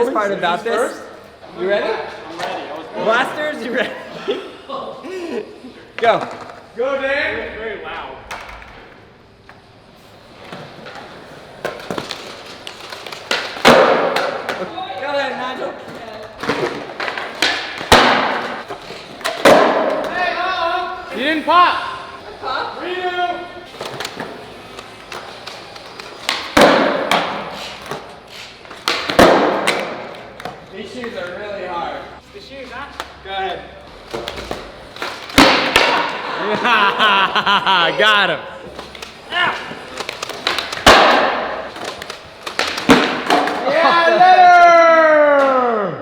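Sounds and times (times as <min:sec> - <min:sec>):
skateboard clacking on pavement: 0:10.8 - 0:14.6, 0:15.9 - 0:20.2, 0:28.7 - 0:31.2, 0:38.7 - 0:43.7.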